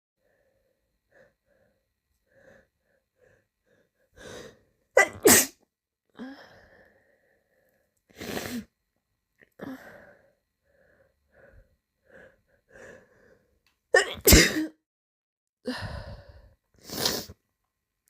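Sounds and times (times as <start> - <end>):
person sneezing: 5.0 - 5.6, 14.0 - 14.8
person breathing in: 15.7 - 16.6.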